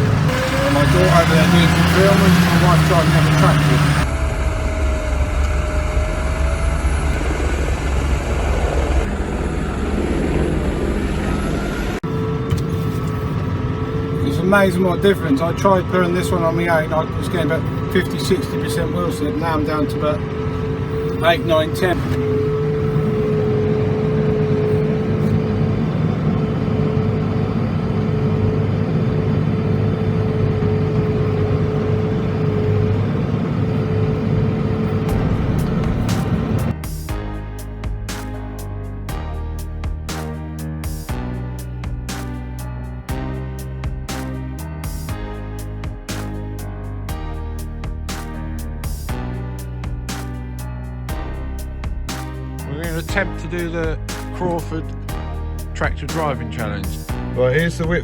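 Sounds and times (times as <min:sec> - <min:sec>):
tractor engine running under load: 0:00.0 - 0:36.8.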